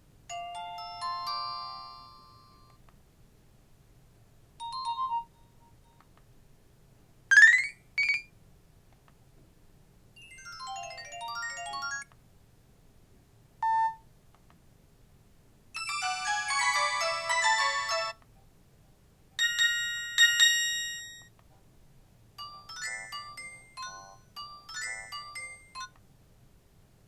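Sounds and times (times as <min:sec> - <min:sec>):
phone ringtones and alert tones: 0:07.3 - 0:08.3, 0:15.8 - 0:18.2, 0:19.4 - 0:21.2.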